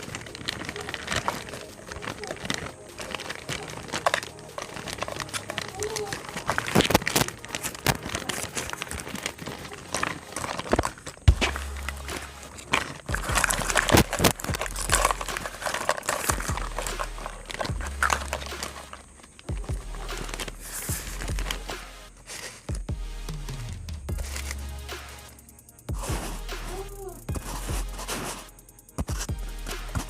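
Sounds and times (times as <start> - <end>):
packaging crinkling: 0.0 - 22.9, 23.5 - 24.7
small plastic pieces clicking: 0.0 - 22.9.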